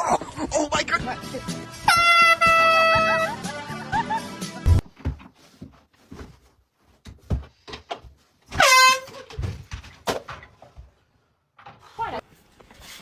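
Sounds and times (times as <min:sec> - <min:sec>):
air horn blast: 0:01.9 - 0:03.3, 0:08.6 - 0:09.1.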